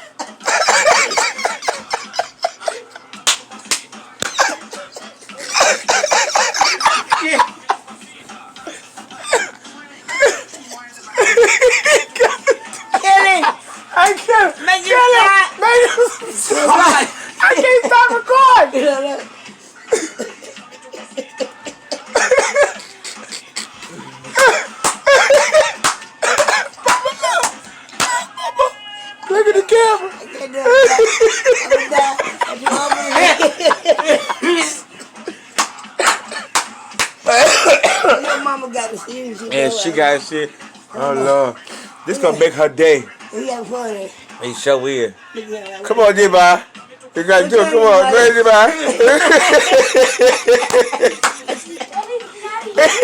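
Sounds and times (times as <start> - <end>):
people coughing: 0.0 - 3.0, 4.2 - 7.9, 9.1 - 13.2, 15.6 - 18.1, 19.8 - 28.8, 30.7 - 38.7, 48.8 - 51.9, 52.8 - 53.0
people laughing: 0.0 - 8.1, 9.0 - 13.8, 15.6 - 18.9, 19.8 - 38.4, 48.6 - 52.2, 52.8 - 53.0
people speaking: 29.3 - 34.8.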